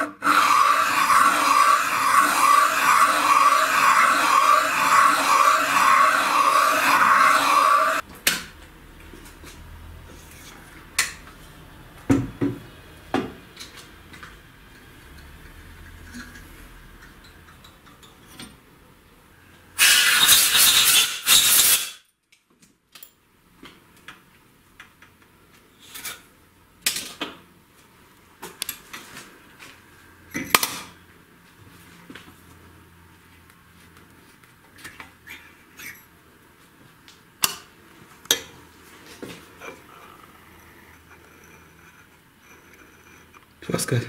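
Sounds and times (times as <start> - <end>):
metal cutter scraping: 0.0 - 8.0, 19.8 - 22.0.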